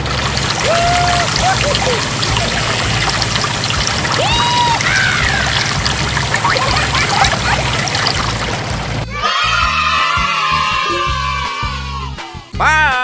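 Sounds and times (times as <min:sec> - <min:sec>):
water pouring and trickling: 0:00.0 - 0:09.1.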